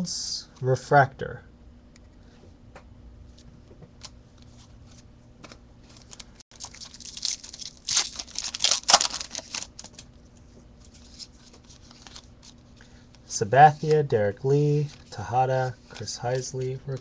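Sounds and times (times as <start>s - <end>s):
foil wrapper tearing and crinkling: 6.1s - 10.1s.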